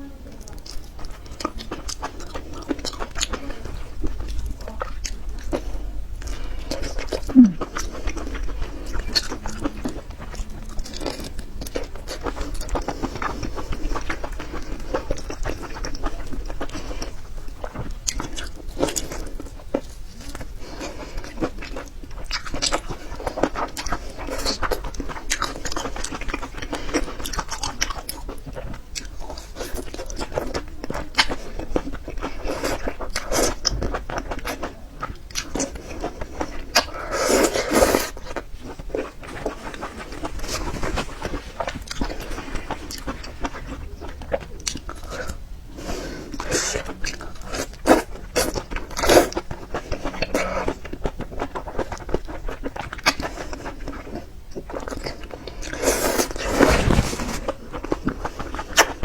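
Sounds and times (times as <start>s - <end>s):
wet chewing and crunching: 0.3s - 59.0s
slurping: 35.4s - 50.8s, 54.8s - 59.0s.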